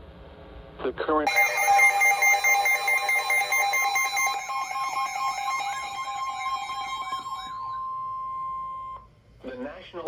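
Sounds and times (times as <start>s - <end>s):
warbling siren-like tone: 1.3s - 9.0s
steady two-tone alarm: 1.3s - 9.1s.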